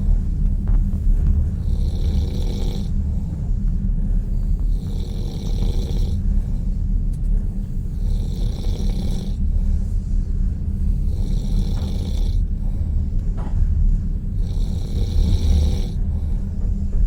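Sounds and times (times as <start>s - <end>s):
low rumble of train carriage: 0.0s - 17.0s
person snoring: 1.6s - 3.3s, 4.4s - 6.3s, 7.8s - 9.6s, 10.9s - 12.6s, 14.3s - 16.1s.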